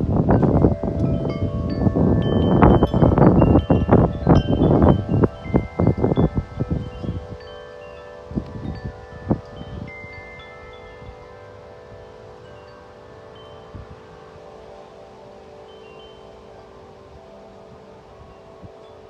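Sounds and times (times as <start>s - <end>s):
wind on microphone: 0.0s - 14.6s
tubular wind chimes ringing: 0.0s - 19.0s.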